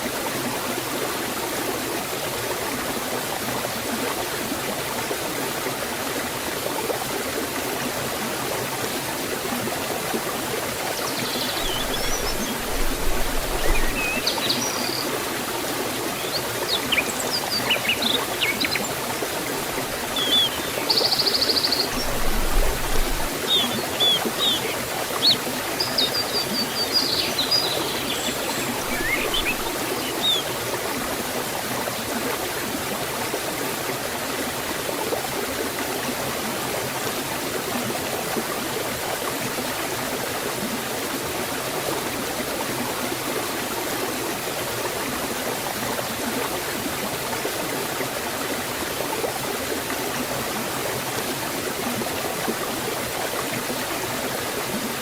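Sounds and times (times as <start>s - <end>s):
stream and waterfall flowing: 0.0s - 55.0s
small birds chirping: 11.0s - 15.2s, 16.0s - 19.0s, 19.9s - 30.5s.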